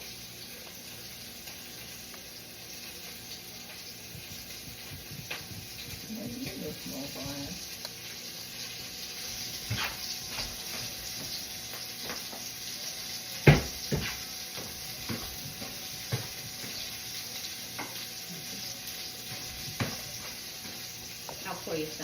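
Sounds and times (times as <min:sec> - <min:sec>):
food sizzling in a frying pan: 0:00.0 - 0:22.0.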